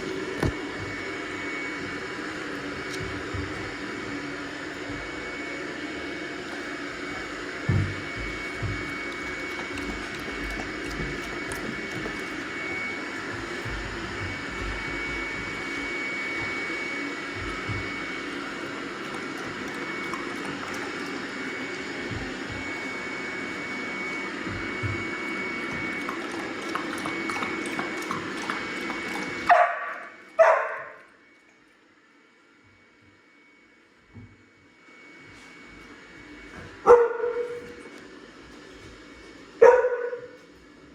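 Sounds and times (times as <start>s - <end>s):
robot vacuum whirring: 0.0s - 31.4s
dog barking: 29.5s - 31.0s, 36.8s - 37.7s, 39.6s - 40.4s.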